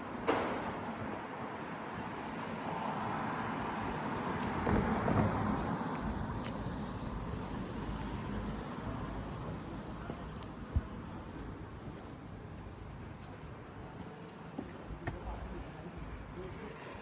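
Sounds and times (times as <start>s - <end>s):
road vehicle passing: 0.0s - 9.8s.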